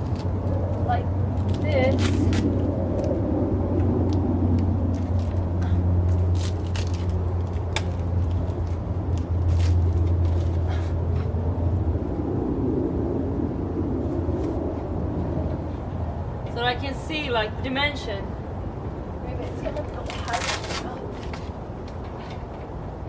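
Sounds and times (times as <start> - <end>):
low engine drone: 0.0 - 16.8.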